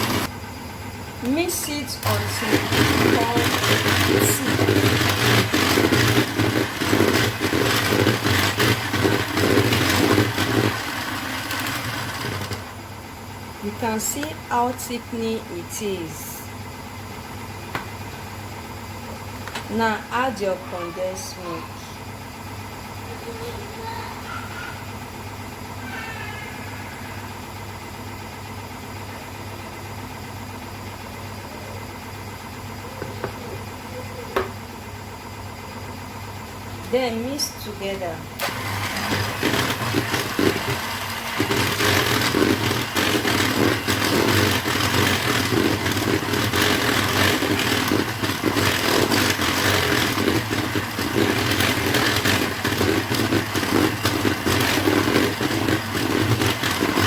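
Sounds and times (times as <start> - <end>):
electric hand mixer whipping cream: 0.0 - 0.3, 1.2 - 12.8, 36.9 - 57.0.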